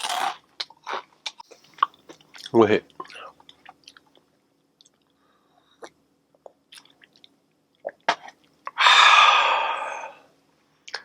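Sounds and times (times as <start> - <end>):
loud breathy exhale: 8.8 - 10.3.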